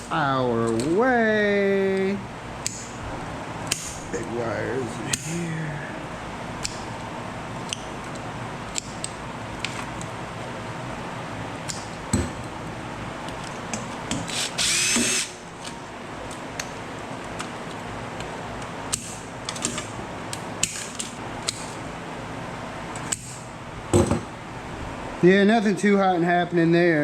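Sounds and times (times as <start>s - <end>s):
power drill whirring: 14.3s - 15.4s.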